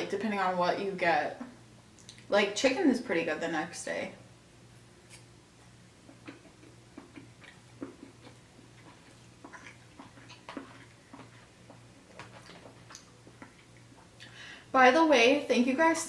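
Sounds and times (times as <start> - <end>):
low steady hum: 0.0 - 16.0
person chewing food: 5.1 - 14.4.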